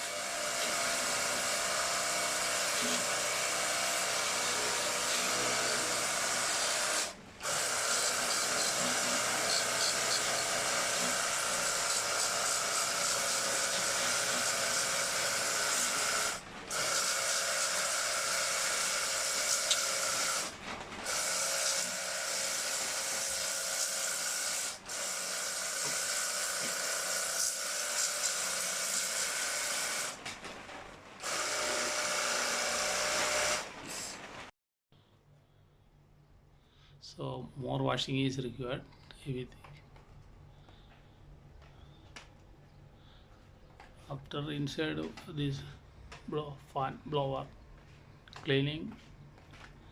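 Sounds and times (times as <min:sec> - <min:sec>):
pressure washer pump whining: 0:00.0 - 0:30.3, 0:31.2 - 0:34.5.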